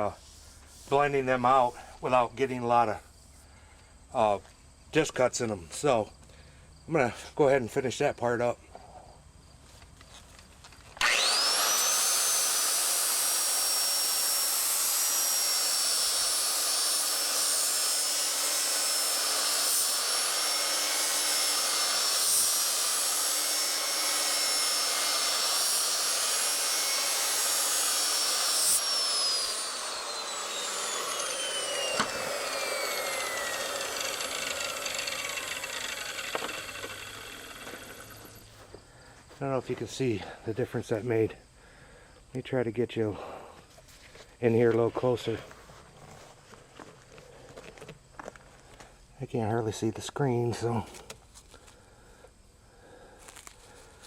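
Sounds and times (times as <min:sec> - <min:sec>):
angle grinder grinding steel: 0:11.0 - 0:38.6.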